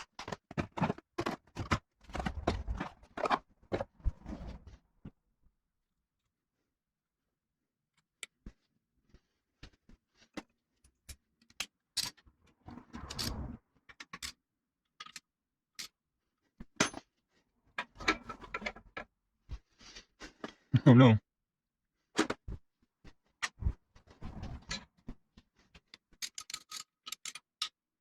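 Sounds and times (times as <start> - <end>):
rattling and scraping: 0.0 - 4.8
tools and engine parts clinking: 26.2 - 27.8.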